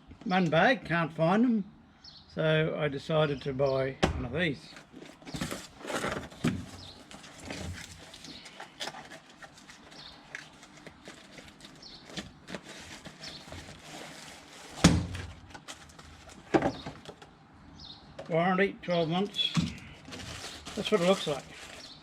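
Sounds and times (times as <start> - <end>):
handling rustles and clicks: 4.7 - 14.8.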